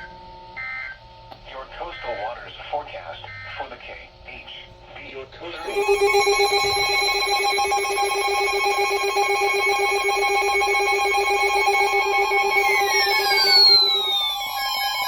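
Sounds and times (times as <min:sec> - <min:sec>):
electronic alert tone: 0:05.6 - 0:15.0
falling tone: 0:05.6 - 0:15.0.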